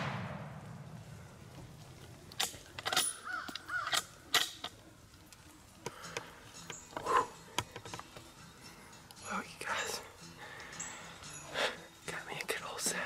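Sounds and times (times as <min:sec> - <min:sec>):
crows cawing: 0:03.2 - 0:04.0.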